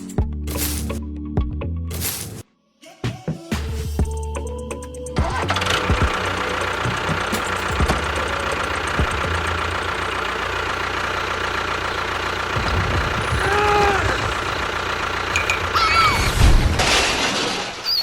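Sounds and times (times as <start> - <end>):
engine knocking steadily: 4.0 - 15.8.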